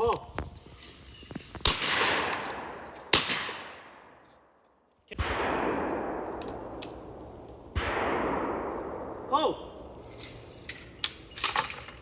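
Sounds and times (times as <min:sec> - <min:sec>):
shotgun shots with echo: 0:01.6 - 0:04.1, 0:05.1 - 0:10.1.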